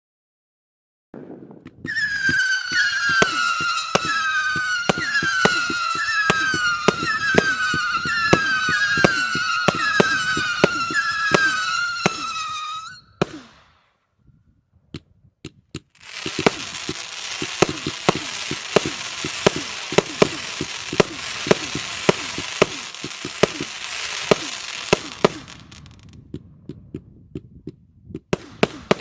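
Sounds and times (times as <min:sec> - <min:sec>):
firework cake firing: 0:01.2 - 0:13.8, 0:15.9 - 0:26.3, 0:28.3 - 0:29.0
firework cracks: 0:01.2 - 0:13.9, 0:15.8 - 0:26.8, 0:28.3 - 0:29.0
falling firework whistles: 0:01.6 - 0:13.9, 0:16.0 - 0:26.2.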